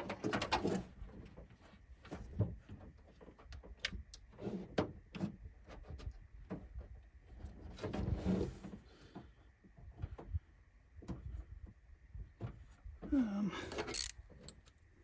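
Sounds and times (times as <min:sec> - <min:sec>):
tools clicking and knocking: 0:13.7 - 0:14.8.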